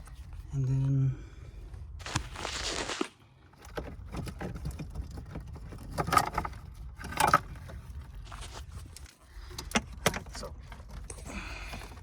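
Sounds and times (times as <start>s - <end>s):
wires rustling and scraping: 0.0s - 0.8s, 1.5s - 12.0s
wires and plastic connectors rattling: 2.0s - 12.0s.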